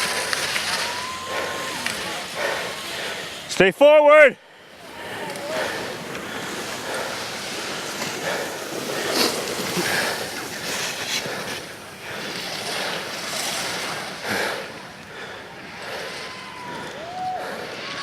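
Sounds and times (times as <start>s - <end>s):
skis scraping hard snow: 0.0s - 3.7s, 5.1s - 14.6s.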